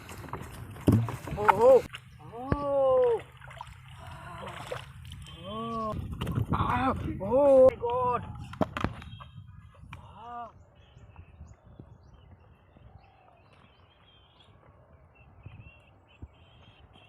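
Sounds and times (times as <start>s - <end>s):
faint birds chirping: 8.3s - 17.0s.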